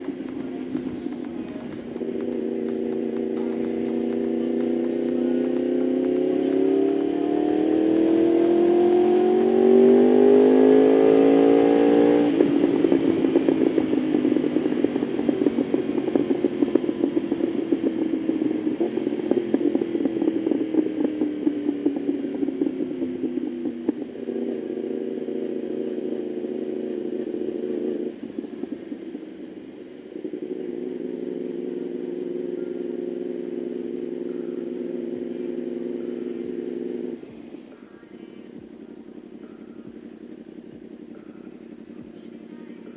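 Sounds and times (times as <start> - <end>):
exhaust pops and crackles: 0.0 - 42.9
motorcycle engine revving: 0.0 - 42.9.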